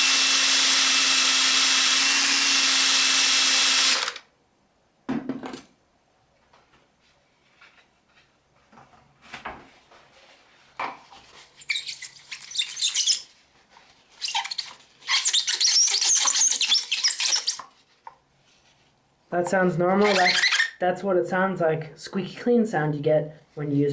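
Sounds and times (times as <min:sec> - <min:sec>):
plastic squeaking while polished: 0:11.4 - 0:13.4, 0:14.1 - 0:18.1, 0:20.0 - 0:20.8.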